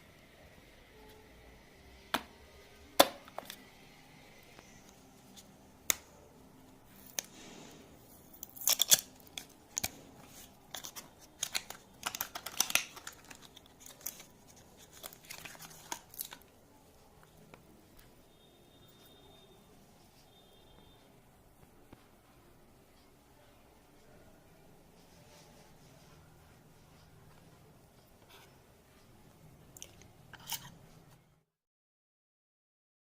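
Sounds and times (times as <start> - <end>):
paper and plastic crinkling: 6.9 - 16.5
packaging clicks and taps: 10.7 - 16.4.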